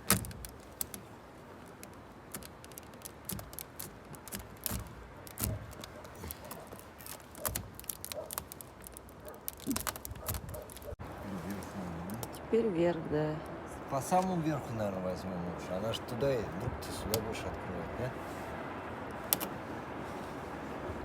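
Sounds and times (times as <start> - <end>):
plastic sheet clicking and snapping: 0.0 - 11.0, 19.3 - 19.5.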